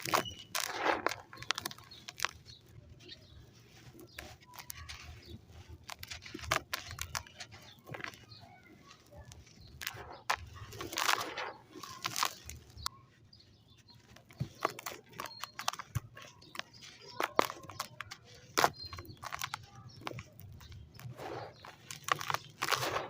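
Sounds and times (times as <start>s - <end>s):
sand clumps crumbling: 0.0s - 23.0s.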